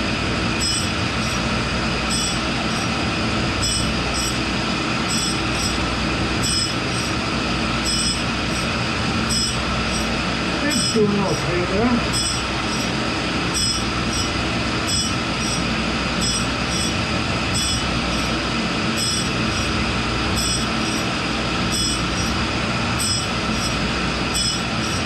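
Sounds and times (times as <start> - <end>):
grinder grinding steel: 2.0 - 3.0, 3.6 - 4.4, 6.4 - 7.1, 7.7 - 19.7, 23.0 - 25.0.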